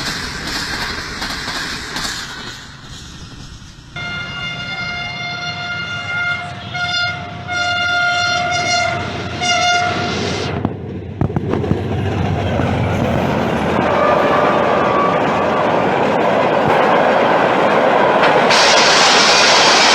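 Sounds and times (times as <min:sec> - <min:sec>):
train wheel clatter: 0:00.0 - 0:04.0, 0:08.6 - 0:19.9
train rushing past: 0:00.0 - 0:19.9
locomotive horn blasts: 0:04.0 - 0:10.6, 0:13.8 - 0:15.8, 0:18.5 - 0:19.6.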